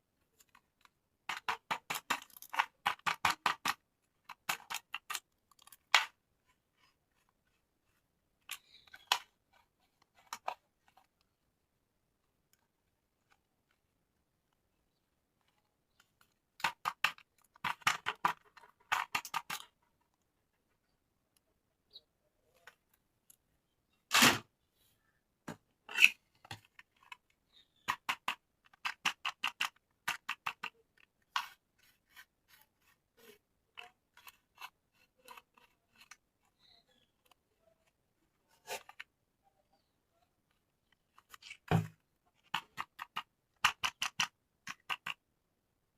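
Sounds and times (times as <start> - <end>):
plastic clicks and crinkles: 0.2 - 11.4, 12.2 - 21.5, 25.9 - 32.6.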